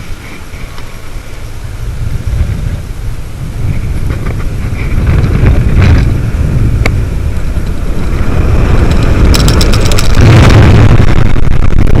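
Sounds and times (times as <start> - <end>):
wind buffeting microphone: 0.0 - 12.0
rapid rattle of clicks: 8.7 - 10.5.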